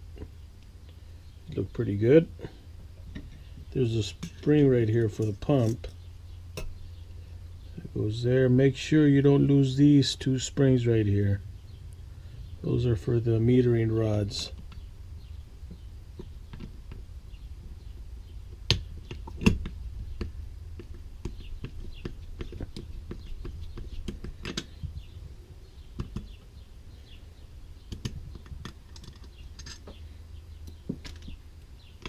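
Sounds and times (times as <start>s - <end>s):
steady low hum: 0.0s - 32.0s
metal parts clicking and tapping: 4.0s - 6.0s, 27.9s - 30.0s.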